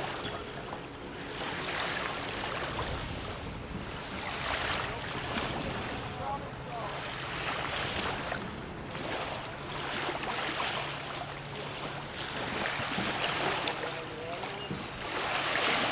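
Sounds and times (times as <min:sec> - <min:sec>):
paddle strokes splashing water: 0:00.0 - 0:15.9.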